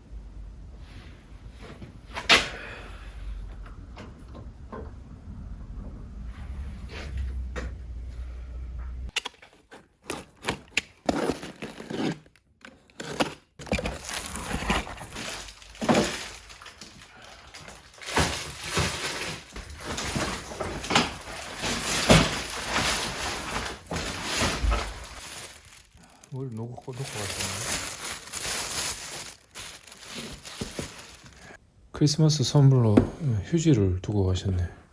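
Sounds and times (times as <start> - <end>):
loud thump: 32.9 - 33.3.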